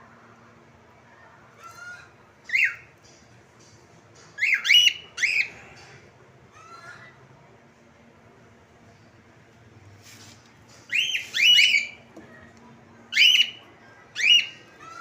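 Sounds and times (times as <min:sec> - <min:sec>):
cockatiel calling: 0:04.4 - 0:05.5, 0:10.9 - 0:12.0, 0:13.1 - 0:13.6, 0:14.2 - 0:15.0.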